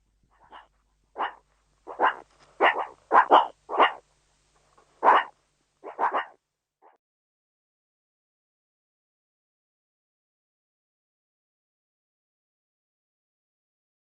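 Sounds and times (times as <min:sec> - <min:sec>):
dog barking: 0:00.4 - 0:04.0, 0:05.0 - 0:07.0.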